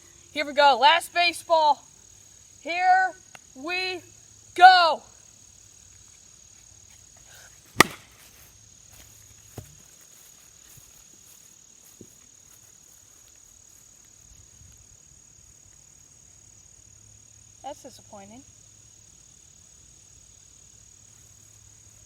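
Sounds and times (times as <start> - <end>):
high drone of insects: 0.0 - 22.0
bat striking baseball: 7.8 - 8.2.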